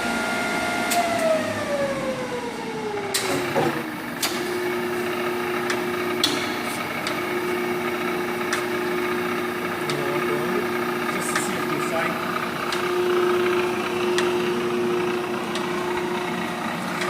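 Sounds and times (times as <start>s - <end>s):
surface grinder humming: 4.7s - 17.0s.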